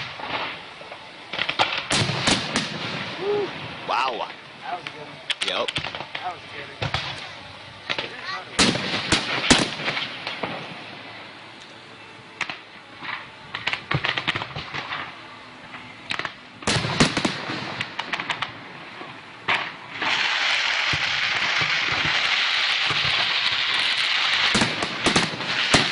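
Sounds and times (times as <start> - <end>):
fireworks exploding: 0.0 - 11.4, 12.3 - 25.9
small firework pops: 1.3 - 2.8, 12.4 - 15.1, 16.0 - 18.6.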